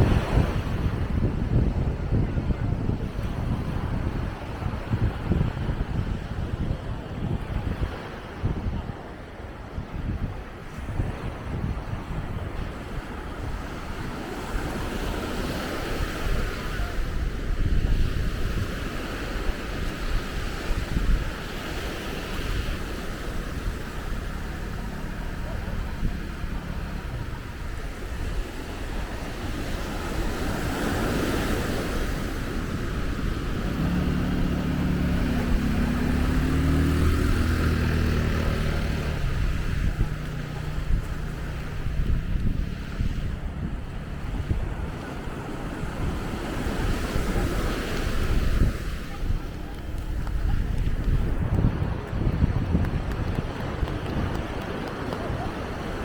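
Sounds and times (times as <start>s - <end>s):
ocean surf breaking: 0.0s - 56.0s
wind rumbling on microphone: 0.0s - 56.0s
motor engine hum: 19.7s - 56.0s.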